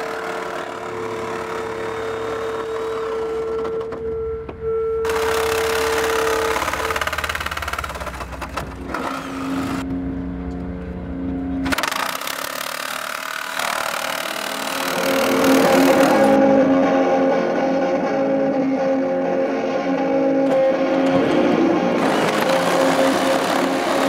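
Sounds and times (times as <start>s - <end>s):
reciprocating saw cutting sheet metal: 11.7s - 16.4s, 22.0s - 24.0s.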